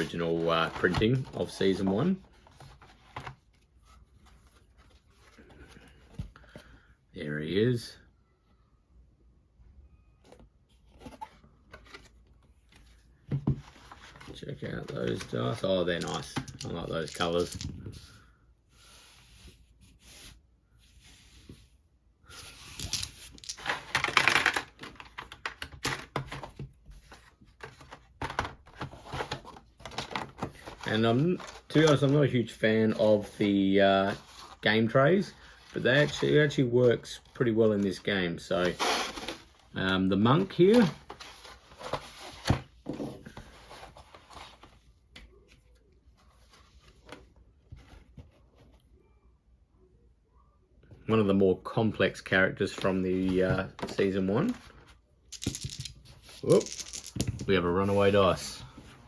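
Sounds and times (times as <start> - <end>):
cardboard and plastic rustling: 0.0 - 6.5, 10.4 - 18.2, 22.4 - 39.7
rustle of game pieces: 15.0 - 18.2, 22.3 - 24.7, 55.3 - 58.6
dice and plastic pieces clicking: 16.0 - 17.7, 22.6 - 24.6, 55.3 - 57.4.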